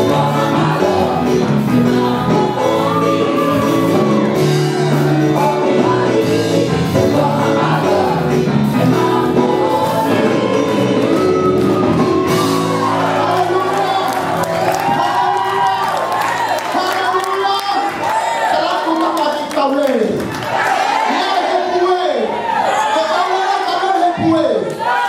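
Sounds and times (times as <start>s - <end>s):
guitar: 0.0s - 16.7s
gospel band with singers: 0.0s - 25.0s.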